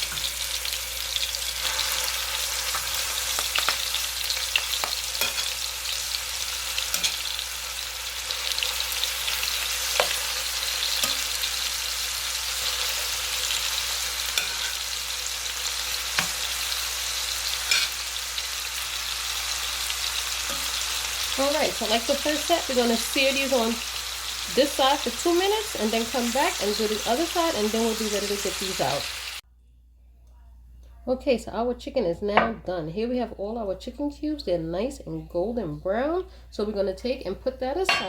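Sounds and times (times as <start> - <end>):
chicken sizzling in a hot pan: 0.0 - 29.4.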